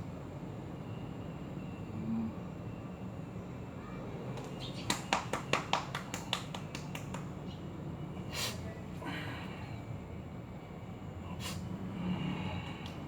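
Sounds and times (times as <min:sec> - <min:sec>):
hands slapping body: 0:04.4 - 0:07.3
hissing breath: 0:11.4 - 0:12.8.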